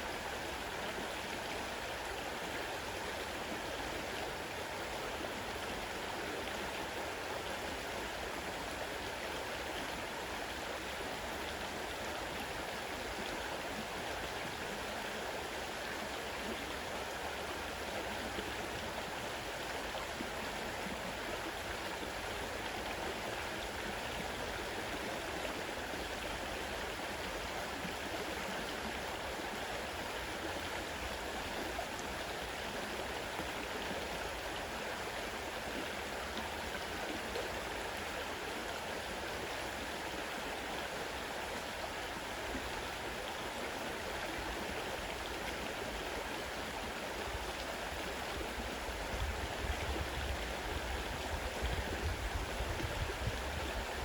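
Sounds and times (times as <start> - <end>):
river water rushing: 0.0 - 54.0.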